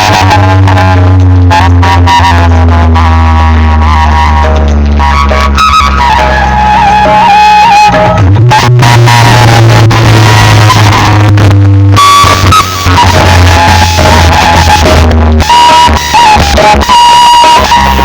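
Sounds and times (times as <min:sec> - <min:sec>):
loud music with heavy bass: 0:00.0 - 0:18.0.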